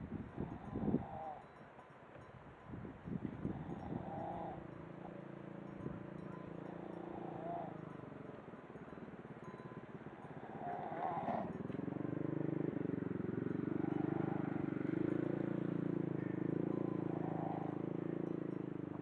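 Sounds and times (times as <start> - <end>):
rattling snoring: 3.4 - 4.7.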